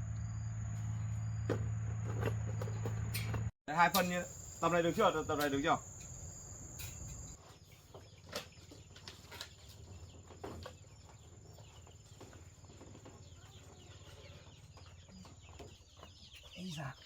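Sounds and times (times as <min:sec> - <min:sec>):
high insect trill: 0:00.0 - 0:07.4
chickens clucking: 0:07.0 - 0:16.7.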